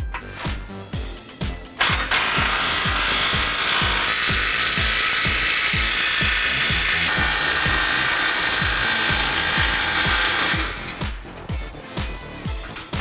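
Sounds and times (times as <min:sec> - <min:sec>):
power tool tightening bolts: 0:00.0 - 0:00.6, 0:01.8 - 0:11.2
background music with steady beat: 0:00.0 - 0:13.0.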